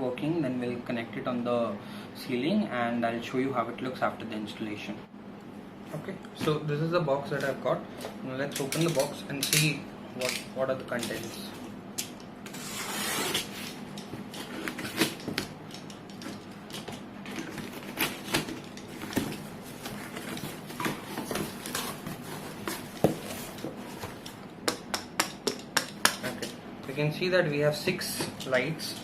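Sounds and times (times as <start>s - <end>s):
cardboard tearing: 12.5s - 13.8s
cardboard rustling: 17.3s - 24.2s.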